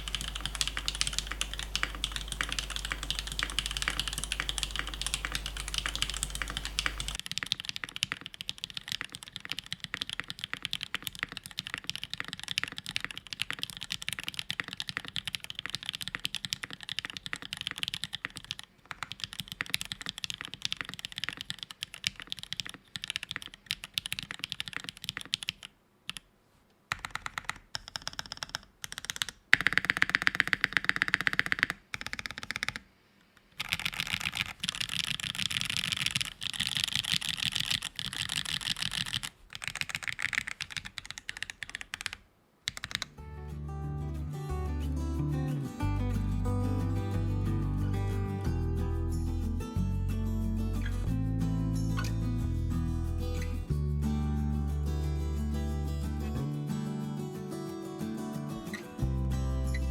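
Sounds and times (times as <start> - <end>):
fast typing on keyboard: 0.0 - 26.2, 26.9 - 32.8, 33.6 - 43.2.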